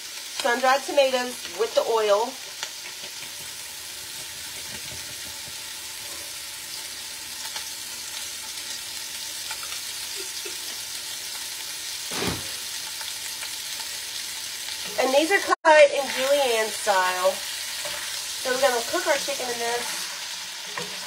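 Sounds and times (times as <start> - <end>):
meat sizzling in grease: 0.0 - 21.0
thud: 12.1 - 12.6.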